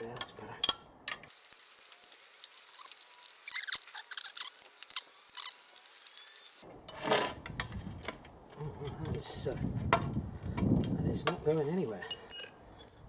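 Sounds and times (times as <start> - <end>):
spanner clicking on nut and bolt: 0.2 - 6.6.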